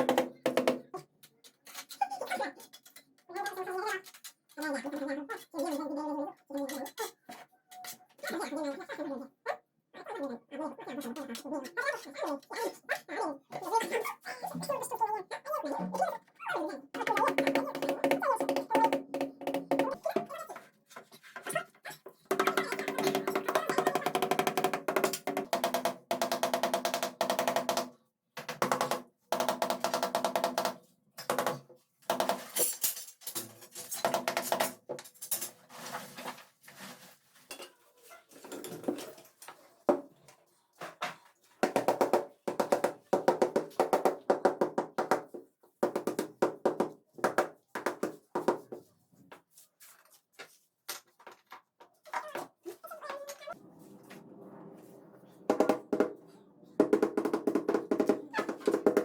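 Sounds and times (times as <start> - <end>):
music with rhythmic percussion: 0.0 - 0.9, 17.1 - 20.0, 22.3 - 27.9, 28.5 - 32.7, 34.0 - 34.8, 55.5 - 59.0.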